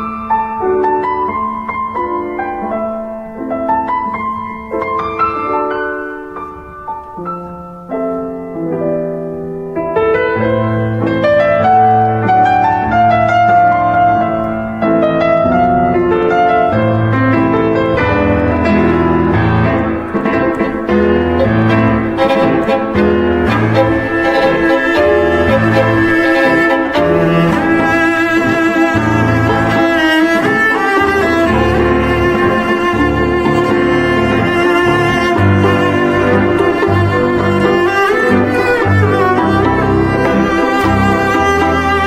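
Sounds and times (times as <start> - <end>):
solo piano music: 0.0 - 42.0.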